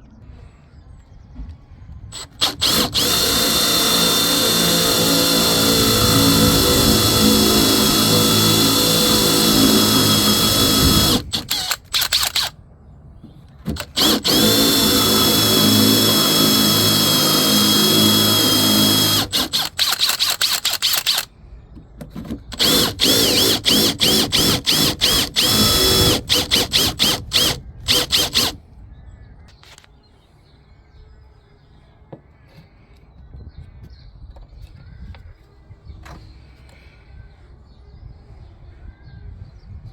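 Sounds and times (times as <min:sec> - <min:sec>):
power drill running: 0:02.2 - 0:12.5, 0:13.8 - 0:21.3, 0:22.5 - 0:28.6.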